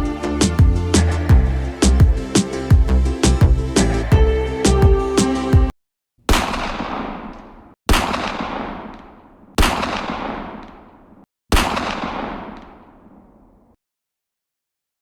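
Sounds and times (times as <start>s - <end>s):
background music: 0.0s - 5.7s
gunshots with echoing decay: 6.3s - 13.8s.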